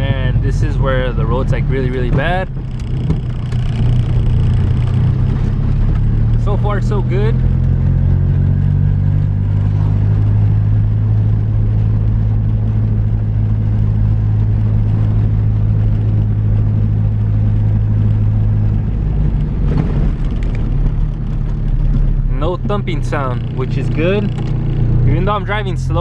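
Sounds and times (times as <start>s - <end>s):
car engine and road drone: 0.0s - 26.0s.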